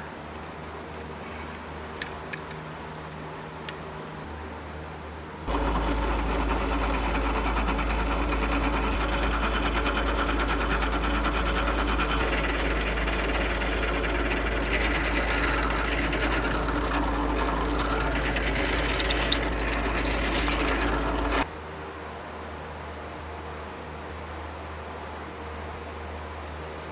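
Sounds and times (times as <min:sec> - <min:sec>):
high-pitched squeals cutting wood: 0:05.5 - 0:21.5
power tool motor humming: 0:05.5 - 0:21.5.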